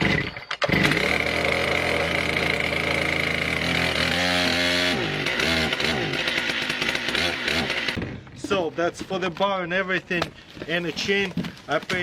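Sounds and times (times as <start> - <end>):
chainsaw engine running: 0.0 - 8.1.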